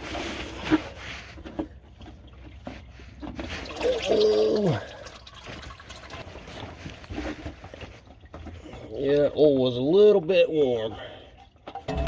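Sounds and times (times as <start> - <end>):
oil trickling into drain pan: 0.6 - 10.2
man groaning: 4.0 - 4.9.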